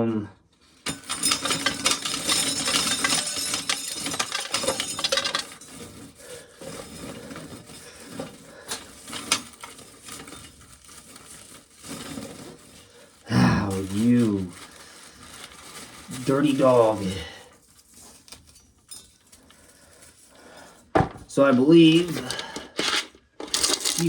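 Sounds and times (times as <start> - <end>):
corn kernels clattering into tub: 0.9 - 17.4, 21.3 - 24.0.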